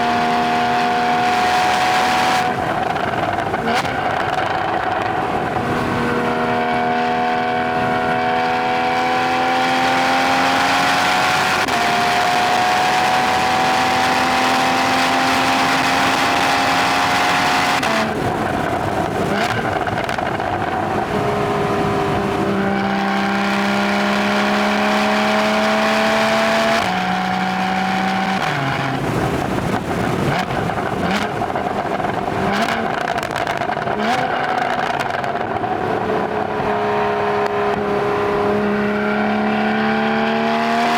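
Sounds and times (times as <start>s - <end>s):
car engine and exhaust under load: 0.0s - 40.9s
exhaust pops and crackles: 17.7s - 21.1s, 28.0s - 36.3s.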